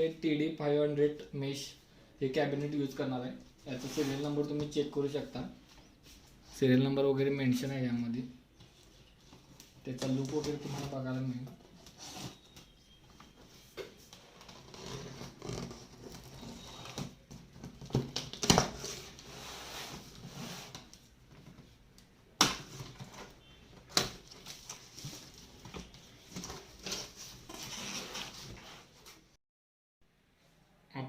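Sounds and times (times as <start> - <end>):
packaging rustling: 22.7 - 28.9.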